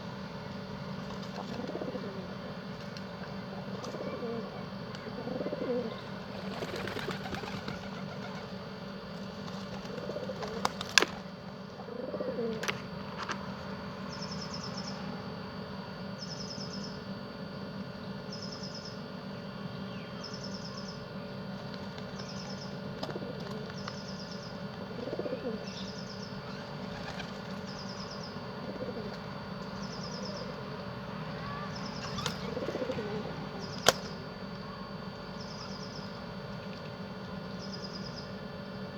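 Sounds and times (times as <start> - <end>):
pigeons cooing: 0.0 - 13.0, 21.8 - 36.4
wings flapping: 6.2 - 8.6, 9.3 - 11.3, 26.5 - 27.7, 31.9 - 34.1.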